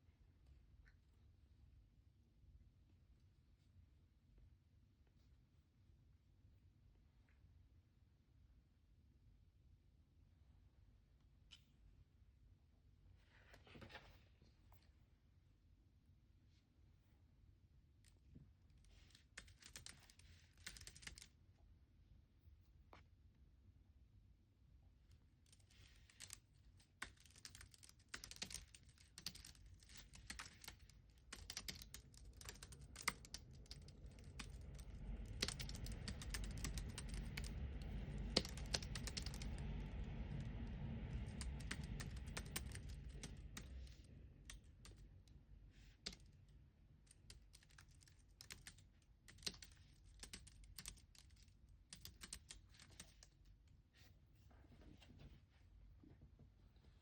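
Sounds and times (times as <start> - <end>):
keyboard typing: 19.1 - 21.3, 26.1 - 39.8, 41.1 - 45.0, 47.1 - 53.3
low rumble: 32.4 - 45.8.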